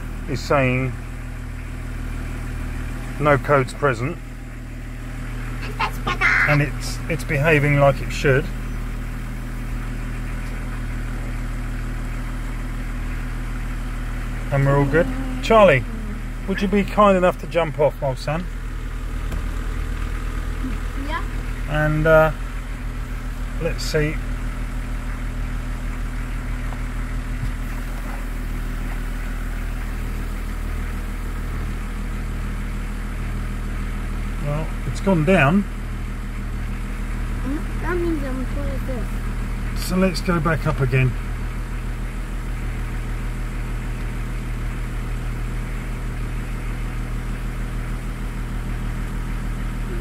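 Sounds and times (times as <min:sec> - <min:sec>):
car engine idling: 0:00.0 - 0:50.0.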